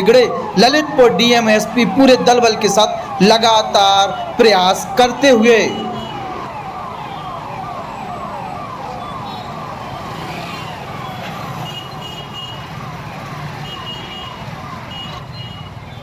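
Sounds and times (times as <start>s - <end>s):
police siren wailing: 0.0s - 11.6s, 12.6s - 15.1s.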